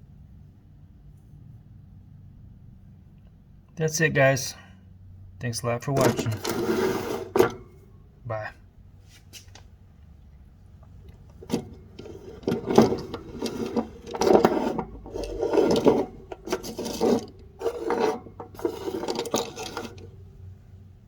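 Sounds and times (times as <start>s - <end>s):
objects scraping over a surface: 6.2s - 7.5s, 11.6s - 20.1s.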